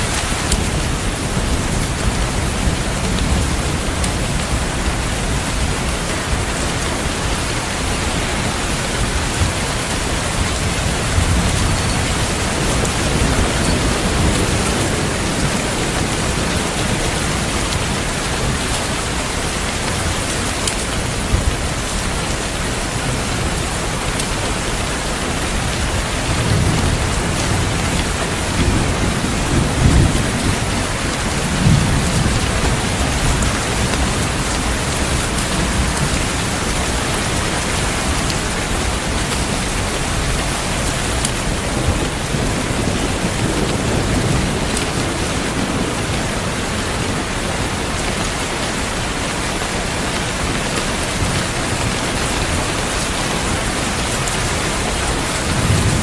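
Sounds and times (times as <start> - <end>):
heavy rain falling: 0.0 - 56.0
rolling thunder: 23.1 - 48.1, 51.2 - 56.0.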